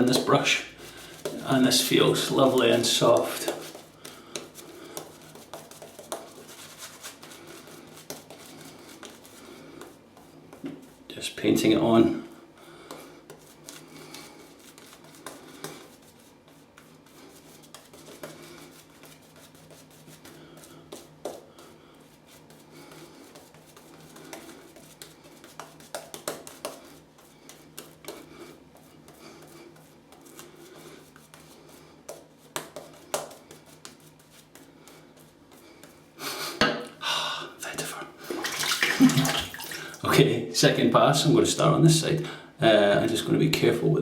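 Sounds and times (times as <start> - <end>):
shaving brush scratching on face: 0.0 - 11.1, 13.3 - 21.2
running water: 38.2 - 40.2.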